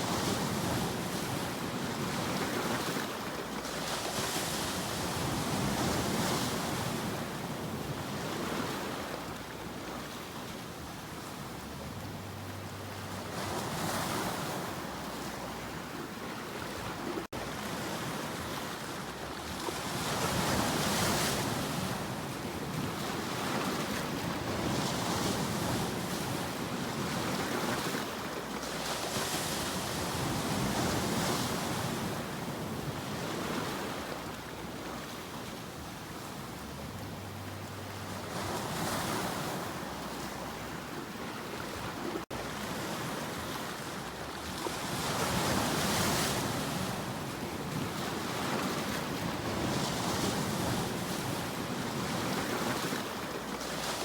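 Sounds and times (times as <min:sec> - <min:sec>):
ocean waves breaking: 0:00.0 - 0:54.0.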